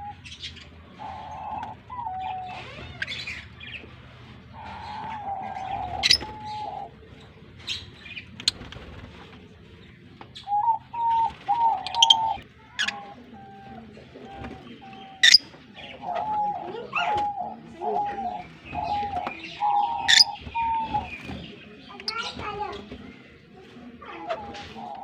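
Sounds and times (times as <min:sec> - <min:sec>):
chatter of lower bird calls: 0:00.0 - 0:09.1, 0:10.3 - 0:25.0
shrill bird chirps: 0:15.2 - 0:15.5.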